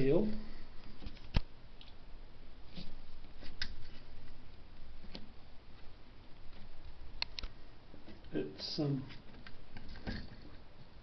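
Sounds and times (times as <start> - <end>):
light clicks and taps: 5.1 - 8.4.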